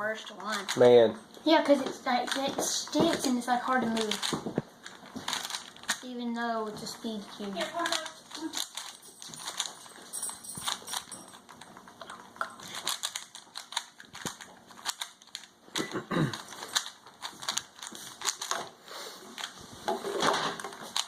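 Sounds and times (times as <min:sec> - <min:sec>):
person speaking: 0:00.0 - 0:04.4, 0:06.0 - 0:08.6
speed cube layers clicking: 0:02.1 - 0:04.5, 0:12.8 - 0:15.5, 0:16.7 - 0:18.6.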